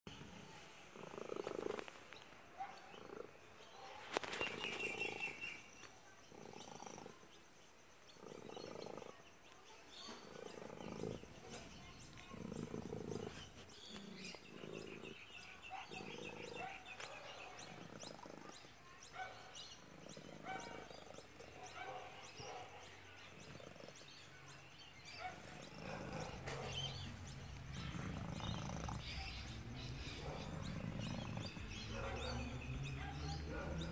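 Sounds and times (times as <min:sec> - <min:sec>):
cat purring: 0:00.1 - 0:02.0, 0:02.8 - 0:03.7, 0:06.2 - 0:07.4, 0:08.1 - 0:09.3, 0:10.0 - 0:22.6, 0:23.2 - 0:24.3, 0:25.2 - 0:33.9.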